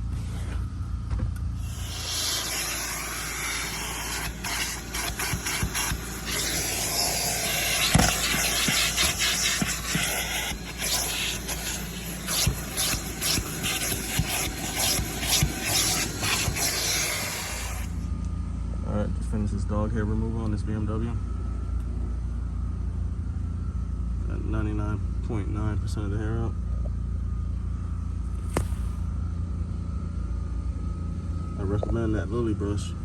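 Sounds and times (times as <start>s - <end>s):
brush scrubbing upholstery: 1.6s - 18.0s.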